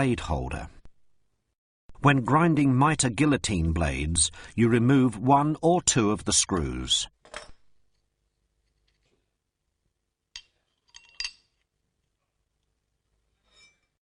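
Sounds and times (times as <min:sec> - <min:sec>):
metal parts clicking: 0:10.3 - 0:11.7.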